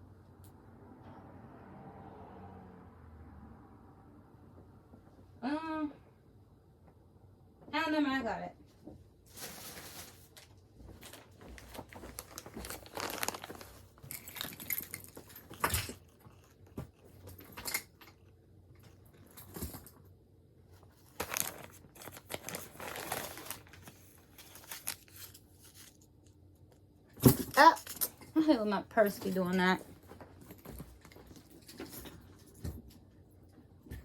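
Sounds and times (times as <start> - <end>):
plastic packaging crinkling and tearing: 9.3 - 15.7, 21.0 - 26.0.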